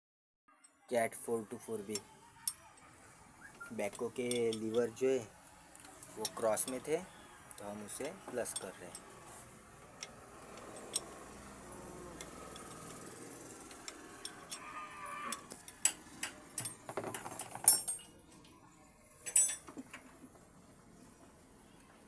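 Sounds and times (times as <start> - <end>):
metal clinks and knocks from tools: 3.8 - 5.0, 5.8 - 13.0, 13.6 - 14.7, 15.3 - 18.4, 19.2 - 20.2.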